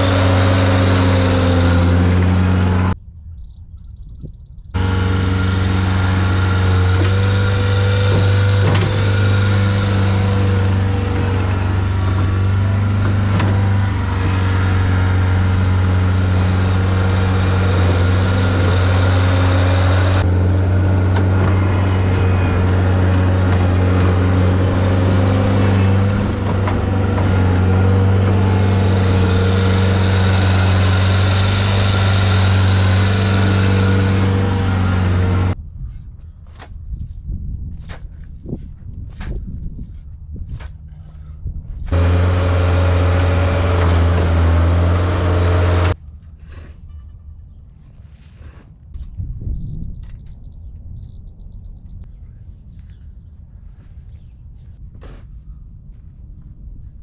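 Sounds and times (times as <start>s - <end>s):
engine running steadily: 0.0s - 3.0s, 4.8s - 35.6s, 40.0s - 46.8s.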